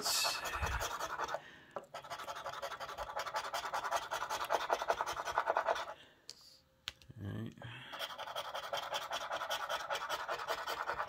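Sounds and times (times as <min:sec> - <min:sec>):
scratching a lottery ticket: 0:00.2 - 0:01.4, 0:02.0 - 0:06.0, 0:07.9 - 0:11.0.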